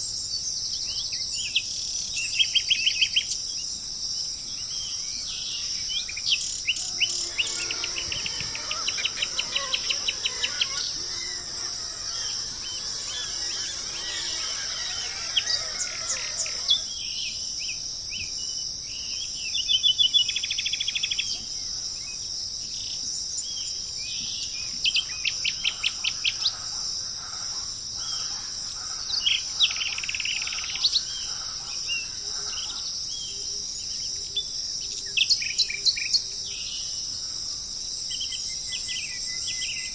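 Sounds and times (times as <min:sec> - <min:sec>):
songbirds trilling: 0:04.2 - 0:39.9
high-pitched insect drone: 0:05.2 - 0:18.1.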